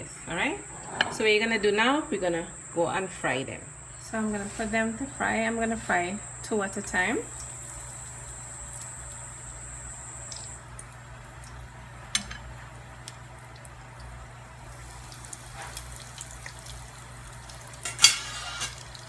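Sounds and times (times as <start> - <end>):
hot oil sizzling: 4.2 - 19.0.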